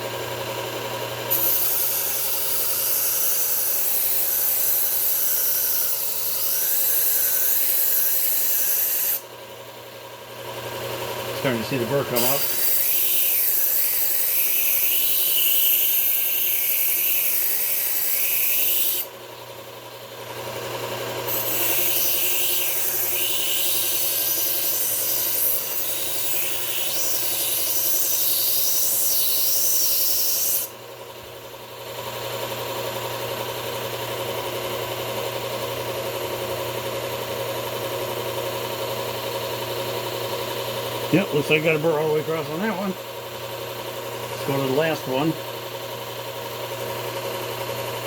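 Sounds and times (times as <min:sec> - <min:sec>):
knife grinding on sanding belt: 0:01.3 - 0:09.2, 0:11.5 - 0:19.1, 0:21.3 - 0:30.7
motor hum: 0:30.7 - 0:48.0.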